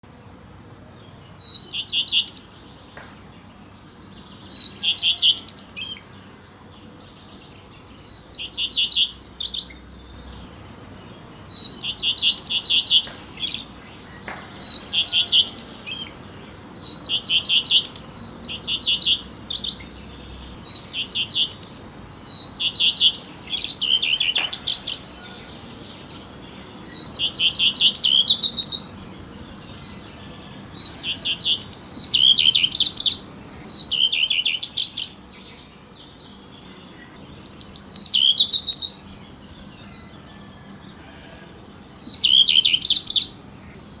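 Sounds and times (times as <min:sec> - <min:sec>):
songbirds chirping: 0:00.0 - 0:44.0.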